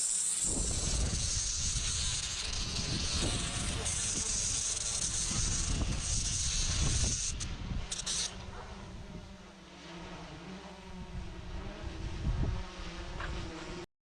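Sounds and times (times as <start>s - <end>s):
power carving tool cutting wood: 0.0s - 8.4s.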